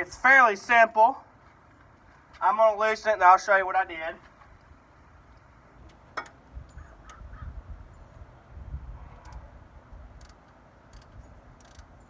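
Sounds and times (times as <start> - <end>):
wind buffeting microphone: 6.4 - 10.3
bird harsh calls: 6.7 - 8.1.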